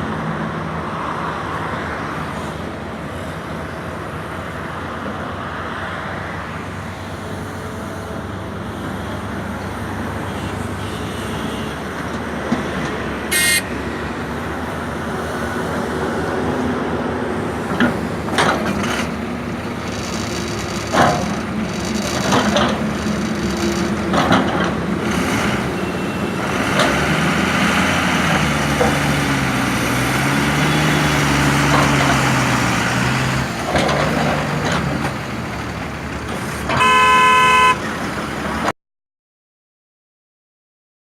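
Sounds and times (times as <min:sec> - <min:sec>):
excavator diesel engine working: 0:00.0 - 0:38.7
vehicle horn: 0:10.2 - 0:11.8, 0:13.3 - 0:13.8, 0:36.7 - 0:38.0.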